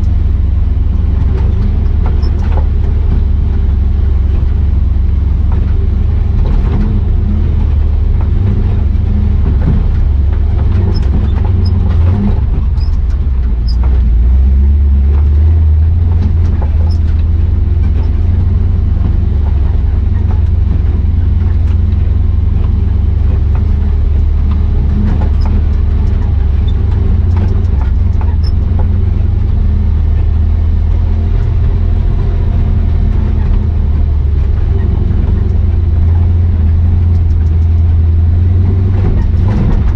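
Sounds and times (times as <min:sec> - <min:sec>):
pickup truck engine droning: 0:00.0 - 0:39.9
light clicks and ticks: 0:15.1 - 0:39.9.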